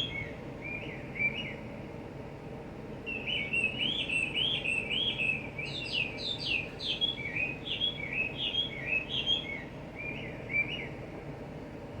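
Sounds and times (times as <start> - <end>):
low background noise: 0.0 - 12.0
songbird singing whistled notes: 3.1 - 10.9.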